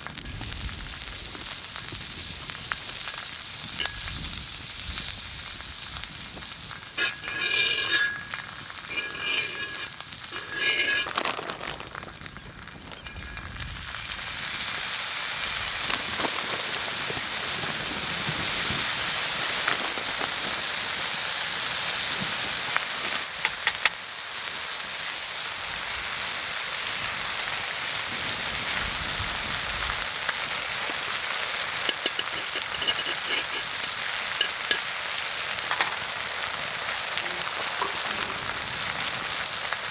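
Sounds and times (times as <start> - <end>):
food sizzling on a griddle: 0.0 - 39.9
sharp pops or spatula clicks: 23.4 - 24.0.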